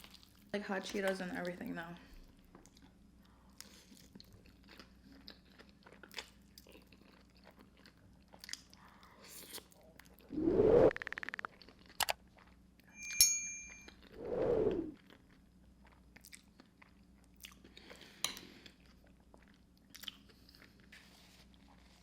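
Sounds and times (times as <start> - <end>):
chewing and crunching food: 0.0 - 10.3, 11.0 - 12.9, 14.9 - 22.0
sharp ringing clink: 13.0 - 13.9.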